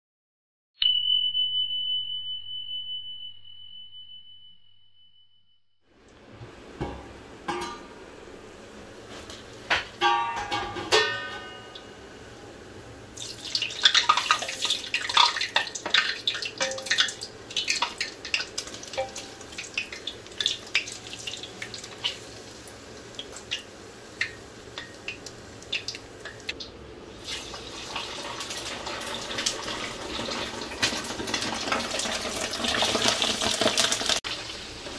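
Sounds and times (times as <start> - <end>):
bright chime: 0.8 - 5.6
metal utensils clinking: 7.5 - 7.9, 9.8 - 12.0, 13.7 - 22.2
water running from a tap: 13.1 - 34.9.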